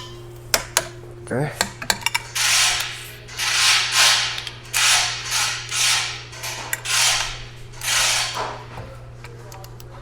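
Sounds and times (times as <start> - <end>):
ratchet wrench pawl rattling: 2.3 - 8.6.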